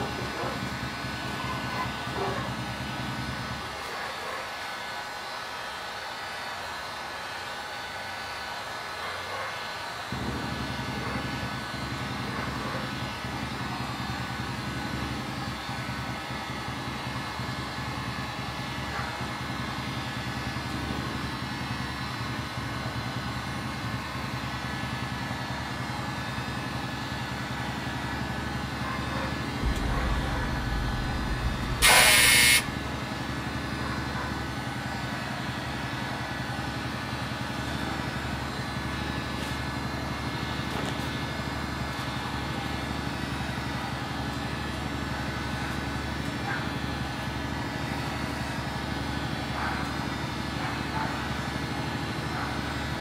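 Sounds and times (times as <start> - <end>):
loud hissing burst: 29.6 - 32.8
heat gun fan humming: 29.6 - 33.2.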